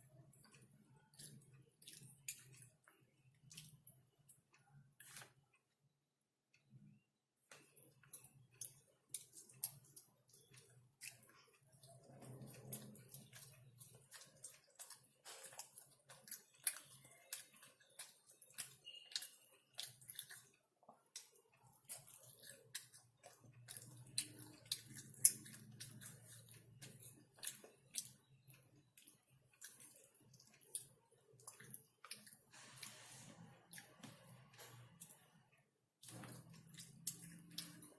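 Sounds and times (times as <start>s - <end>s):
wet chewing and lip smacks: 0.0s - 5.4s, 7.5s - 32.9s, 36.0s - 37.9s.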